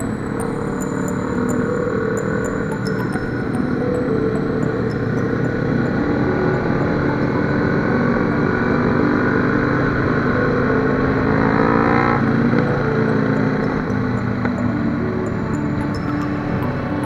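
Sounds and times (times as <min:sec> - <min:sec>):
motorcycle engine running: 0:04.6 - 0:17.0.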